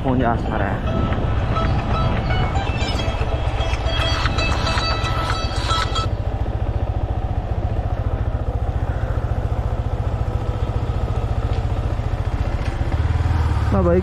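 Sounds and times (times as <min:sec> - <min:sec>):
single-cylinder engine running: 0:00.0 - 0:14.0
short tune: 0:00.4 - 0:06.3.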